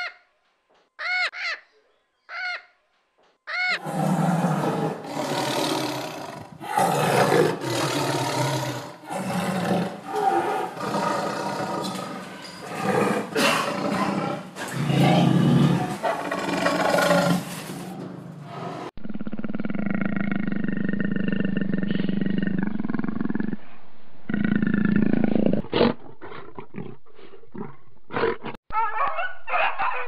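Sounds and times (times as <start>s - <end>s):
animal roaring: 3.8s - 17.6s, 18.5s - 23.7s, 24.3s - 28.6s.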